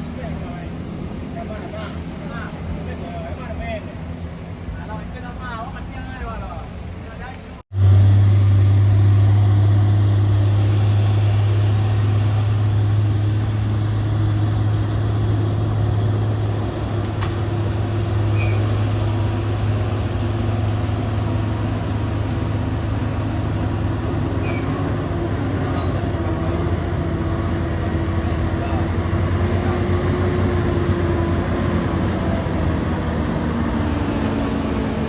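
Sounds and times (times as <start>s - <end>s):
truck diesel engine droning: 7.7s - 35.0s.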